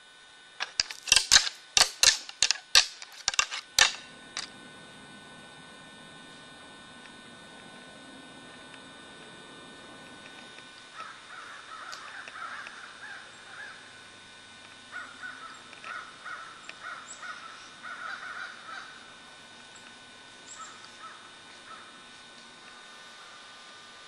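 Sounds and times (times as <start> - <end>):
faint hiss and hum: 0.0 - 24.0
crows cawing: 10.9 - 13.9, 14.9 - 19.0, 20.5 - 22.0.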